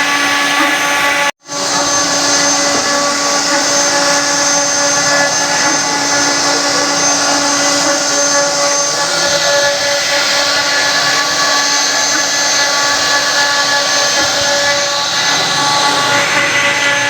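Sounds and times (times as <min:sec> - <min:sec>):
wood router spindle whining: 0:00.0 - 0:17.0.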